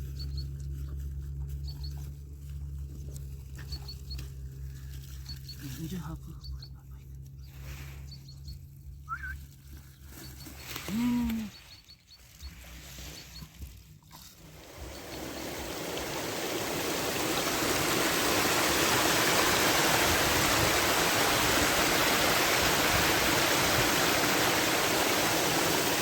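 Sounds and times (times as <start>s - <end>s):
flowing water rushing: 14.4s - 26.0s.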